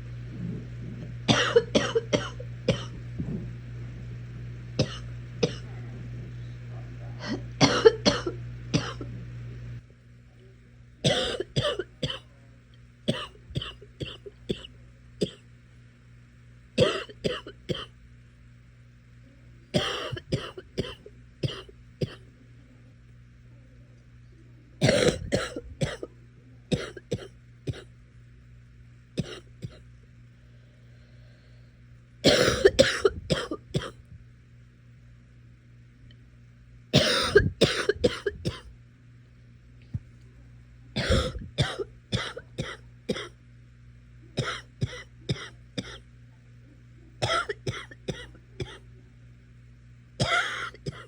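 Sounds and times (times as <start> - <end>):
person coughing: 1.3 - 3.0, 4.8 - 5.7, 7.2 - 9.1, 11.1 - 12.3, 13.1 - 15.4, 16.8 - 17.9, 19.8 - 22.2, 24.8 - 26.1, 26.7 - 27.9, 29.2 - 29.8, 32.2 - 34.0, 37.0 - 38.7, 41.0 - 43.4, 44.4 - 46.0, 47.2 - 48.8, 50.2 - 51.0.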